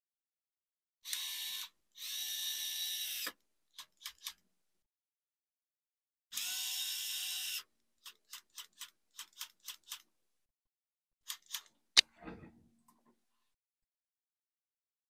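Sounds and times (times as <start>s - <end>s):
electric screwdriver motor whirring: 1.0s - 3.3s, 6.3s - 7.7s
ratchet-like clicks: 8.0s - 10.0s, 11.3s - 11.7s.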